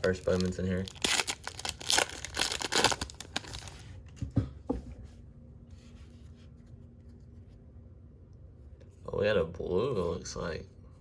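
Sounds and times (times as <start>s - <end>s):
cards rustling: 0.0s - 3.8s.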